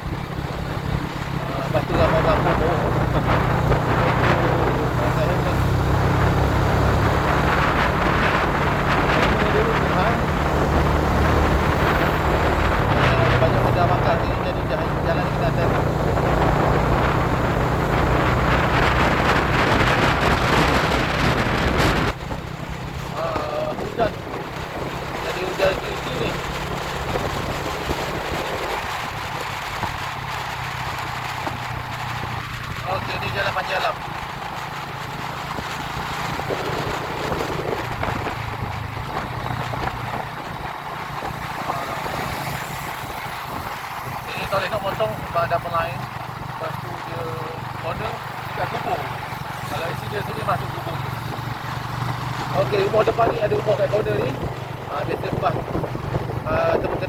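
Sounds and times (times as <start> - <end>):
low engine hum: 0.0 - 57.0
vehicle road noise: 0.0 - 57.0
wind buffeting microphone: 0.0 - 57.0.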